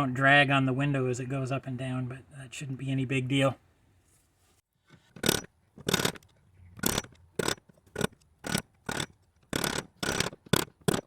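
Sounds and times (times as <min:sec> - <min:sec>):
hammer striking metal rivets: 0:05.2 - 0:06.2, 0:06.8 - 0:11.0.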